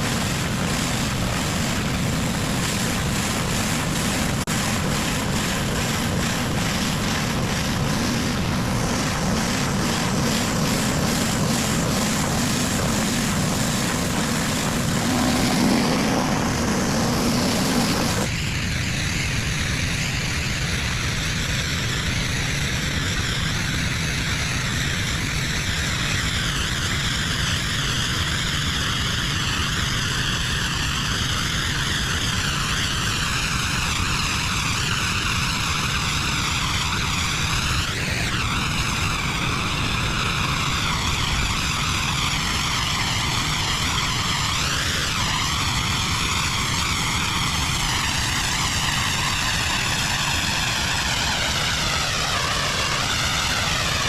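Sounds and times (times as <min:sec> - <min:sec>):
high-pressure water jet hissing: 0:00.0 - 0:18.4, 0:29.0 - 0:54.0
pressure washer engine drone: 0:00.0 - 0:19.0, 0:31.2 - 0:54.0.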